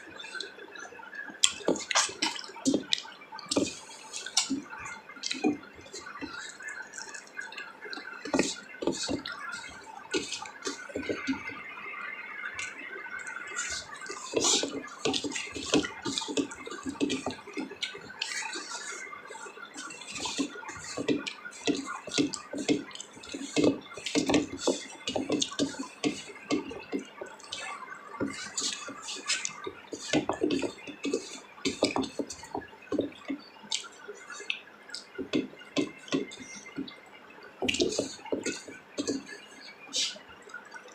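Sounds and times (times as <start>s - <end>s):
wet chewing and lip-smacking: 1.4s - 11.5s.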